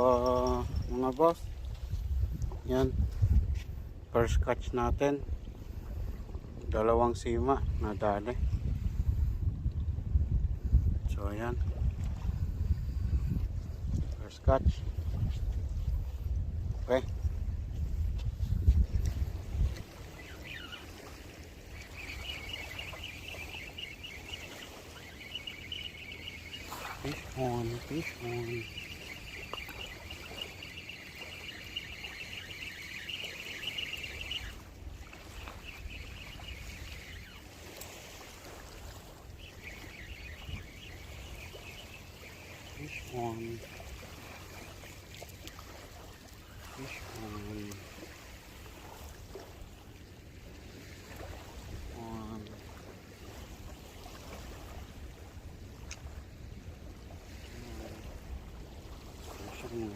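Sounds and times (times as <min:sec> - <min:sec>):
low wind rumble: 0:00.0 - 0:47.2
seawater washing on shore: 0:19.2 - 0:59.9
high fast chirring: 0:21.8 - 0:37.5.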